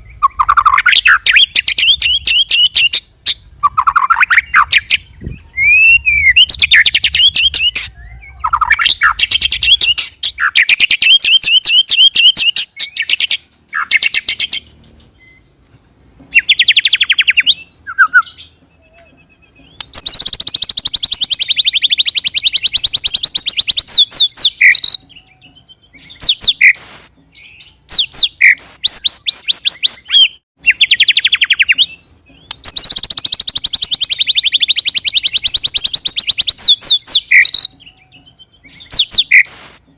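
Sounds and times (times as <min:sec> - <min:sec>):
bird whistled phrases: 0:00.0 - 0:03.0, 0:03.6 - 0:15.4, 0:16.4 - 0:39.9
songbird singing rolling trills: 0:00.0 - 0:15.6, 0:16.3 - 0:39.9.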